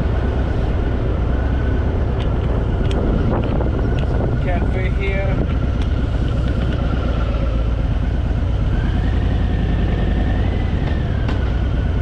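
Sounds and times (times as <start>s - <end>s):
motorcycle engine rumble: 0.0s - 12.0s.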